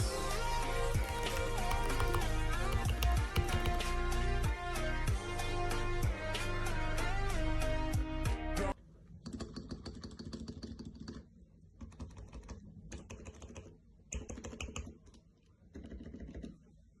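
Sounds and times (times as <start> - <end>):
keyboard key clacks: 1.0 - 4.0.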